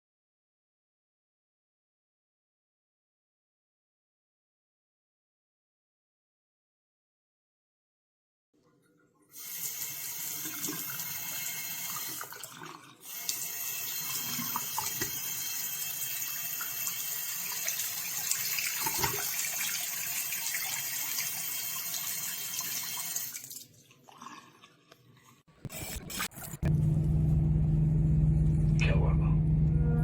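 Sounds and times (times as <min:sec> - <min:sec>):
faucet water running into sink: 0:09.3 - 0:24.7.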